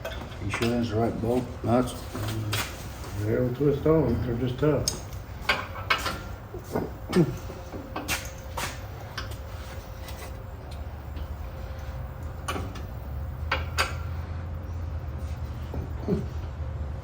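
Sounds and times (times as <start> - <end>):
steady low hum: 0.0 - 17.0
hand tools clicking and tapping: 4.8 - 9.4.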